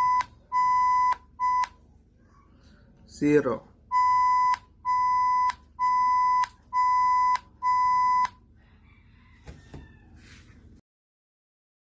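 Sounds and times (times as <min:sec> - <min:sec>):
morse code beeps: 0:00.0 - 0:01.8, 0:03.9 - 0:08.4.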